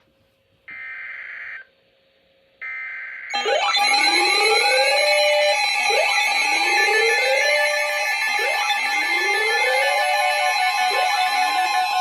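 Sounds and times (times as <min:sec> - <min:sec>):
electronic alert with rising sweeps: 0:02.7 - 0:12.0
buzzing data tones: 0:03.3 - 0:12.0.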